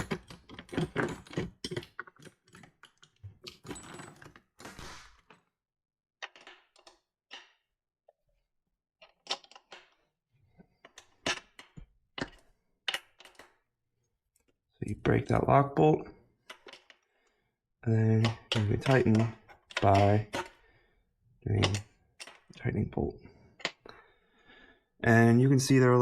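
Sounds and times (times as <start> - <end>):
metal tools clinking and rattling: 0.0 - 4.4, 18.3 - 20.6.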